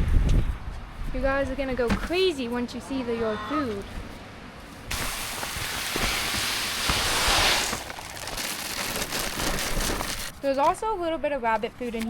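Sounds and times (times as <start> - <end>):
dry feed poured into a bin: 4.9 - 10.3.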